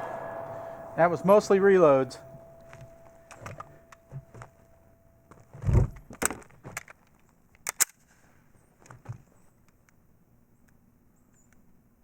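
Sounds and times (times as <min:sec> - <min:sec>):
pistol clicks: 0:06.2 - 0:08.1.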